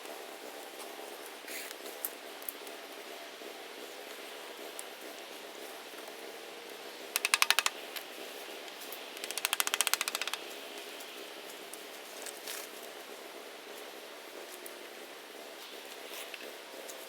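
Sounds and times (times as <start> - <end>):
rapid mechanical clicking: 7.0 - 10.9.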